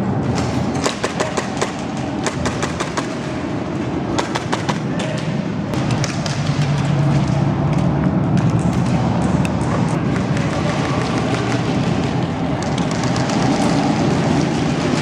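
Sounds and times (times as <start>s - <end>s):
airsoft guns firing bursts: 0.7s - 5.2s, 10.0s - 15.0s.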